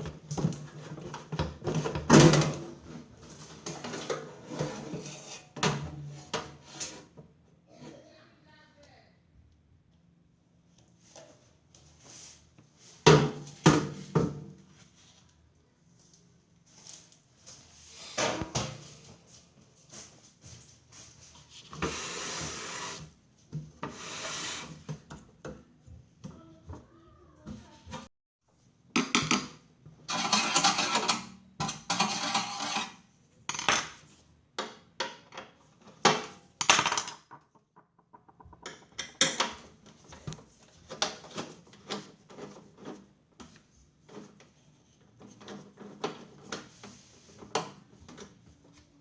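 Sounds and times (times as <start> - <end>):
hard objects knocking and scraping: 36.6 - 39.6.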